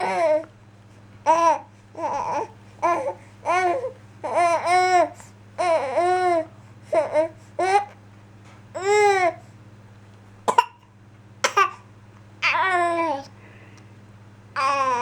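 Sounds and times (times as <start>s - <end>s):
baby babbling: 0.0s - 0.5s, 1.3s - 8.0s, 8.8s - 9.4s, 12.4s - 13.4s, 14.6s - 15.0s.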